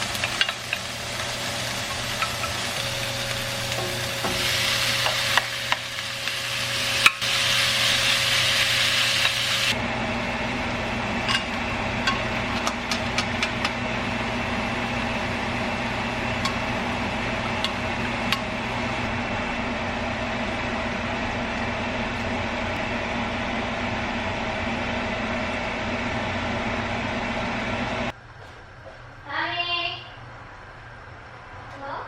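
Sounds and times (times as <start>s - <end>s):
food sizzling in a frying pan: 0.0s - 19.1s
steady hum: 0.0s - 31.6s
utensil clacking against pan: 11.2s - 13.8s, 17.4s - 18.5s.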